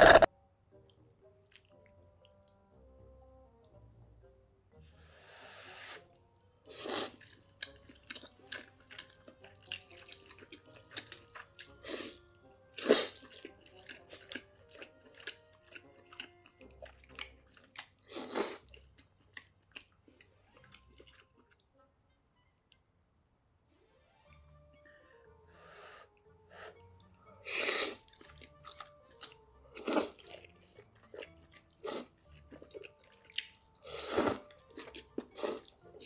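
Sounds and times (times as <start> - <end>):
loud noisy eating bursts: 0.0 - 0.3
chewing with wet mouth clicks: 1.5 - 2.6, 7.2 - 12.3, 13.1 - 21.6, 28.0 - 36.0.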